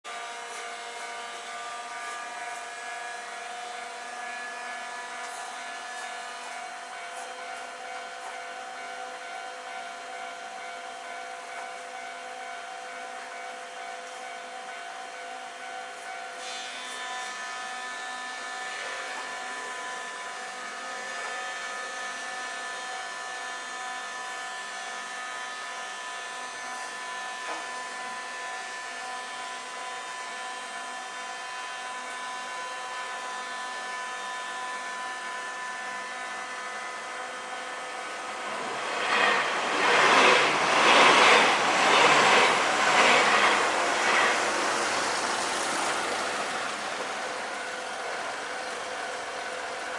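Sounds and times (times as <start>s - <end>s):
electric train passing: 0.1s - 49.9s
wheels clattering on rail: 38.5s - 47.5s.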